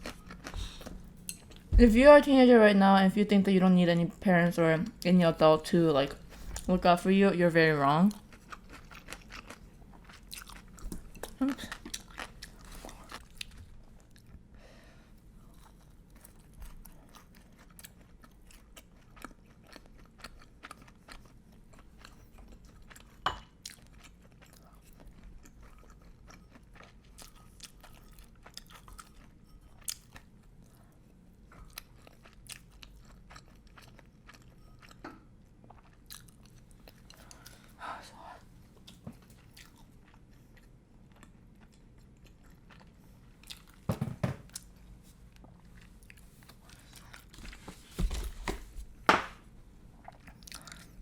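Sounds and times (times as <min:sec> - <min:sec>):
person chewing crispy food: 0:00.0 - 0:01.4, 0:08.1 - 0:14.4, 0:15.3 - 0:37.7, 0:38.8 - 0:43.8, 0:49.9 - 0:51.0.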